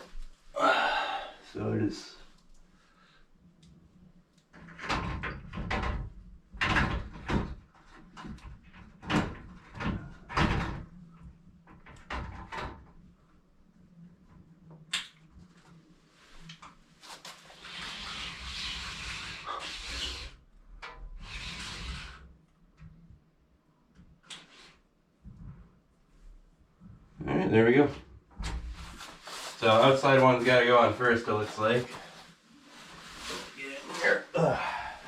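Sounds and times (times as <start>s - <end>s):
door scraping and sliding: 17.5s - 20.4s, 21.2s - 22.3s.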